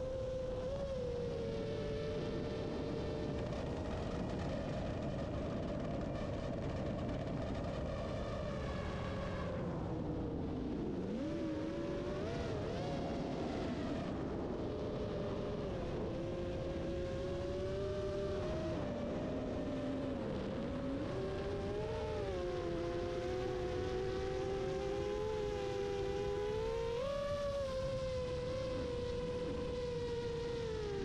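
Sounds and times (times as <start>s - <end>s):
drone motors and propellers whining: 0.2s - 31.0s.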